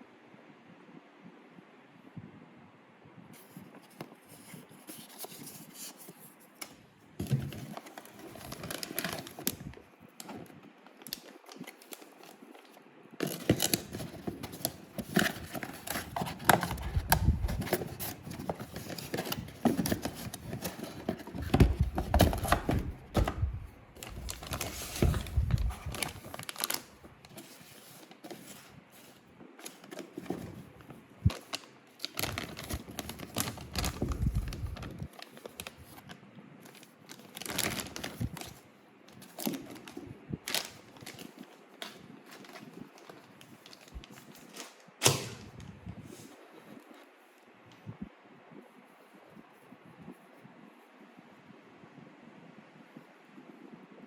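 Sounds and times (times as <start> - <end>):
packaging being torn open: 24.0 - 26.9.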